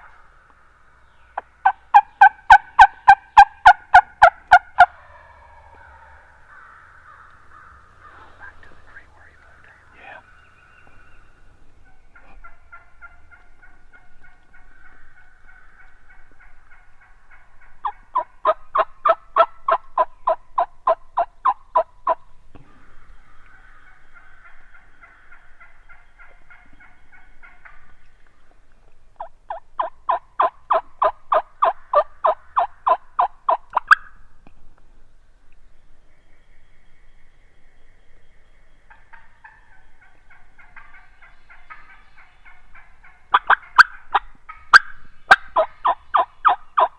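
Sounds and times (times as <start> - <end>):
turkey yelping: 1.4 - 8.6, 11.8 - 22.2, 29.2 - 34.2, 38.9 - 46.9.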